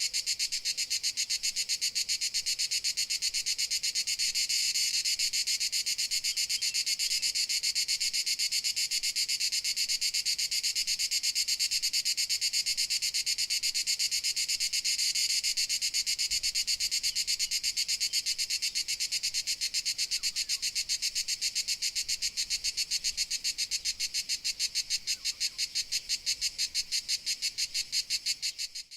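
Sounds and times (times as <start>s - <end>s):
crickets chirping: 0.0s - 28.9s.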